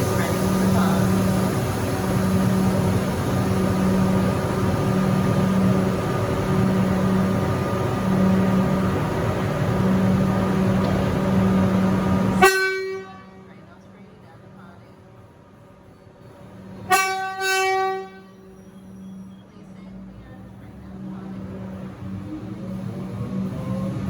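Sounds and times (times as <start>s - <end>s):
electric train equipment humming: 0.0s - 24.0s.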